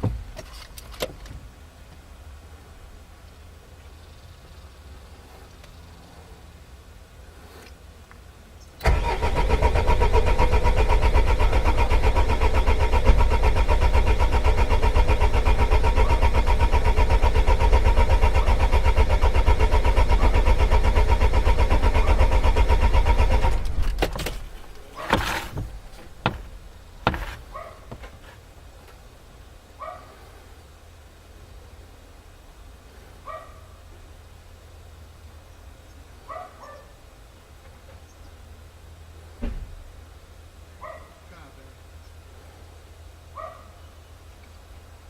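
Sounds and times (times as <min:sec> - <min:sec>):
diesel engine cranking: 0:08.8 - 0:28.9
sharp knocks: 0:23.9 - 0:28.4.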